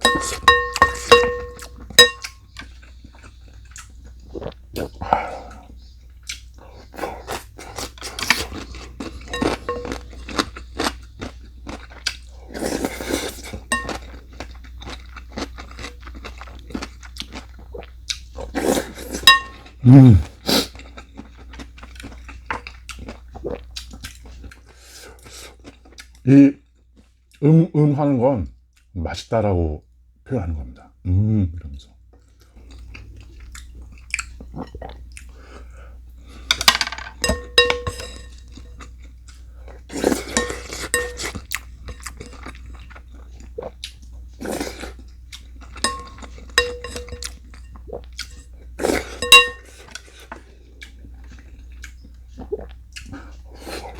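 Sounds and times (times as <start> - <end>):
sharp clink: 0.0 - 2.4, 9.4 - 10.0, 19.3 - 19.6, 45.9 - 47.3, 49.2 - 49.7
person chewing crunchy food: 0.0 - 24.6, 37.3 - 53.9.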